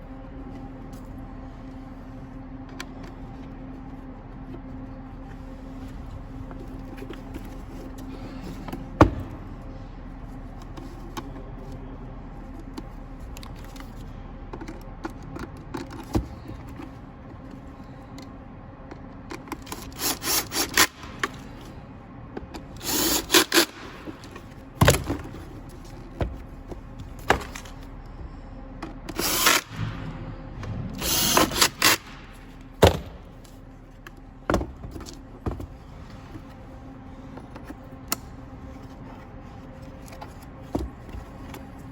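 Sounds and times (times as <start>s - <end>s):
parts knocking and clicking: 12.4s - 36.6s
cordless drill driving screws: 22.8s - 23.8s, 29.1s - 29.8s, 31.0s - 32.2s.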